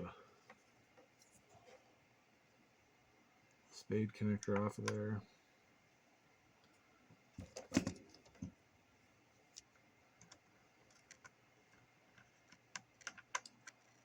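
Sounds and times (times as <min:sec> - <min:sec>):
small clicks and taps: 0:04.4 - 0:05.0, 0:09.5 - 0:14.0.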